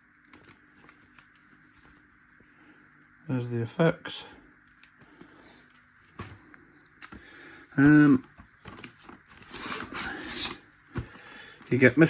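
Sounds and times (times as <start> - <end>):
cardboard rustling and scraping: 0.3 - 2.2, 7.8 - 12.0.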